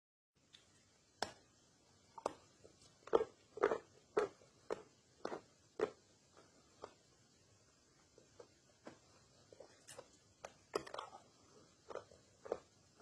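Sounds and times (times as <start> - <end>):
crunchy chewing: 2.2 - 7.1, 8.1 - 13.0.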